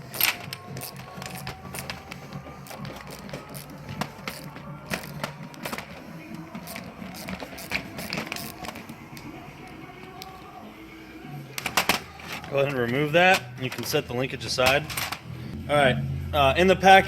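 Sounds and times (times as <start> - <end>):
ratchet wrench clicking: 0.0 - 9.2
background music: 0.0 - 17.0.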